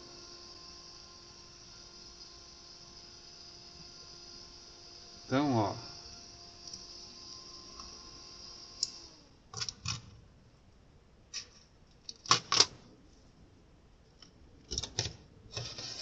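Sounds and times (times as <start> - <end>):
computer fan whining: 0.0 - 9.4.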